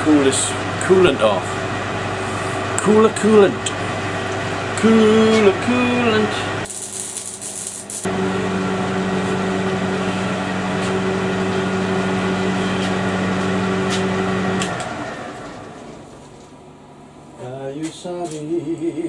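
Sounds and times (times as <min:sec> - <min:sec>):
electric motor humming: 0:00.0 - 0:06.7, 0:07.8 - 0:16.3.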